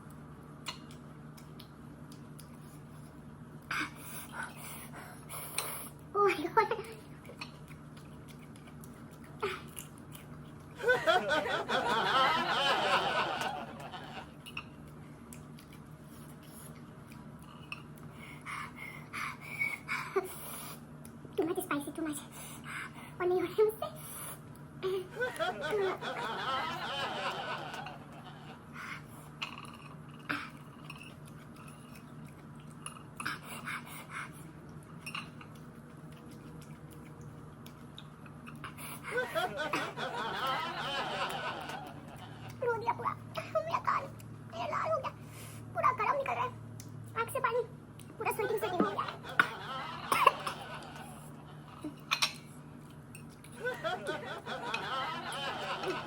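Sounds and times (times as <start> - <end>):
faint low hum: 0.0 - 56.0
woman laughing: 10.8 - 14.2, 24.8 - 28.6, 39.1 - 42.0, 48.4 - 52.0, 53.6 - 56.0.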